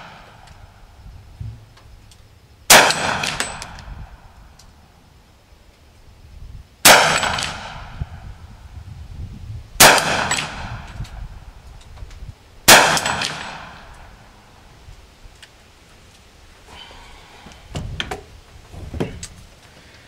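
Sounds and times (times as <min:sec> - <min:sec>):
gunshots with ringing echo: 0:02.7 - 0:04.2, 0:06.8 - 0:08.1, 0:09.8 - 0:11.0, 0:12.7 - 0:14.3.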